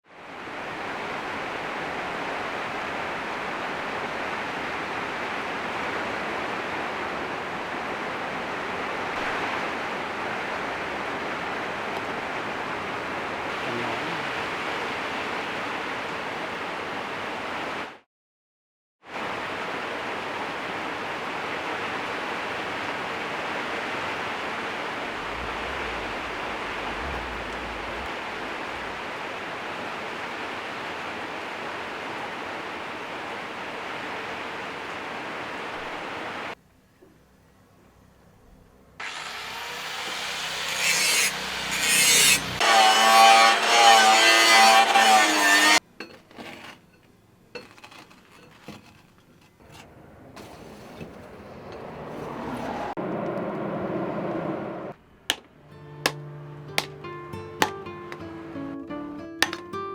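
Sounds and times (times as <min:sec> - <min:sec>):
steady rushing hiss: 0:21.6 - 0:36.6.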